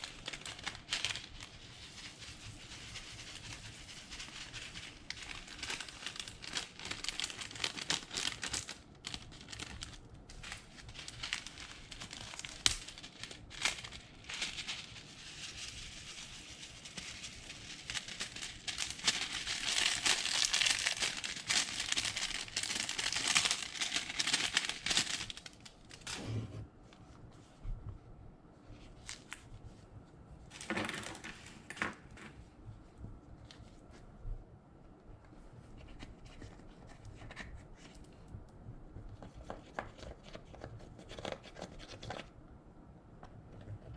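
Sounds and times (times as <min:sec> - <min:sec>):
slime crackling and popping: 0:17.8 - 0:26.0.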